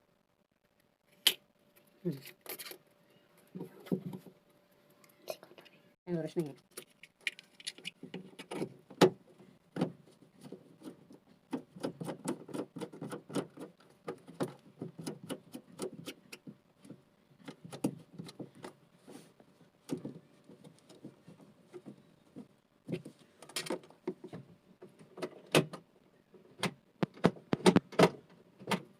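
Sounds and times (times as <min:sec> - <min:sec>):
parts clicking and knocking: 0:06.6 - 0:18.8, 0:26.5 - 0:28.9.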